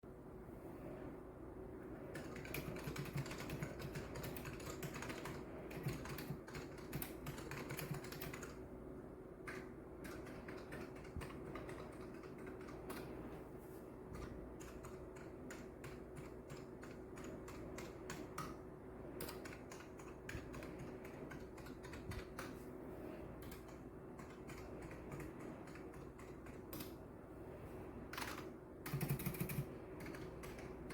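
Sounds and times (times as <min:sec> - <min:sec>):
mechanical keyboard typing: 0:02.1 - 0:08.6, 0:09.4 - 0:13.1, 0:14.2 - 0:18.6, 0:19.2 - 0:22.6, 0:23.4 - 0:27.0, 0:28.1 - 0:30.9.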